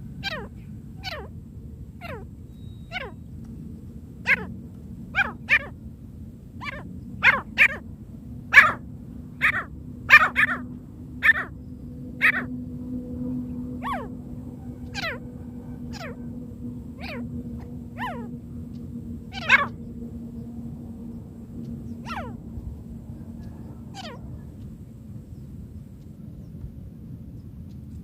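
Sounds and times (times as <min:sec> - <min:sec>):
faint steady hum: 0:00.0 - 0:28.0
francolin calling: 0:00.2 - 0:01.3, 0:02.0 - 0:03.3, 0:04.2 - 0:04.5, 0:05.1 - 0:05.8, 0:06.6 - 0:07.8, 0:08.5 - 0:12.6, 0:13.3 - 0:24.7.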